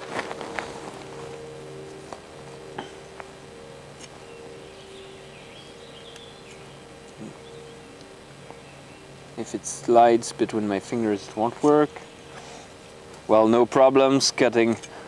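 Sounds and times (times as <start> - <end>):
faint low hum: 0.0 - 15.0
small bird chirping: 4.0 - 9.5.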